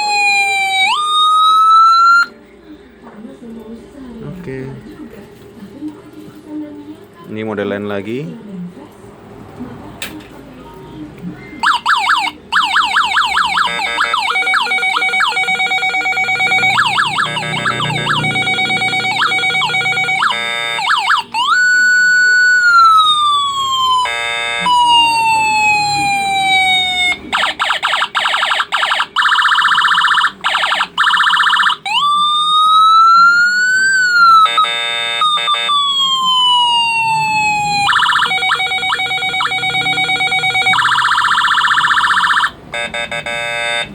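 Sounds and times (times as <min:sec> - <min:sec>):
electronic siren tones: 0:00.0 - 0:02.3, 0:11.6 - 0:43.9.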